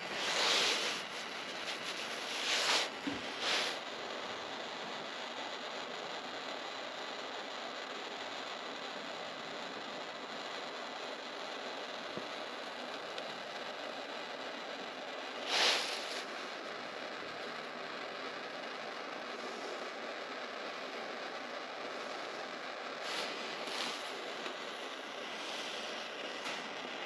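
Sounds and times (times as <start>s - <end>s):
torch flame hissing: 0.0s - 4.4s, 15.2s - 17.2s, 21.9s - 27.0s.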